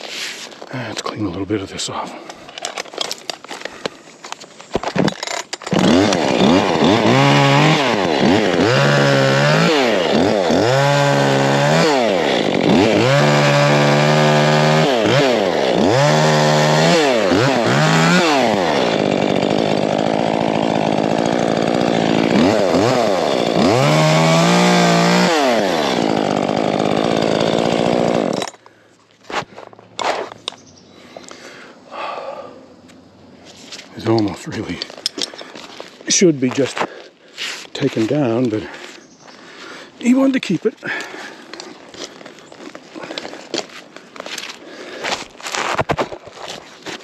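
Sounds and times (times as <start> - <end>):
chainsaw revving and cutting: 5.0 - 28.6, 39.6 - 45.8.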